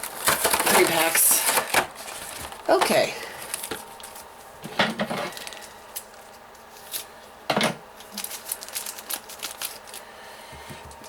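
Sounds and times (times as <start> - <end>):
packaging clicks: 0.0 - 4.2, 8.0 - 10.0
packaging crinkling: 0.0 - 4.5, 5.3 - 7.1, 8.0 - 10.1
plastic and cardboard rustling: 0.0 - 7.1, 8.0 - 10.1.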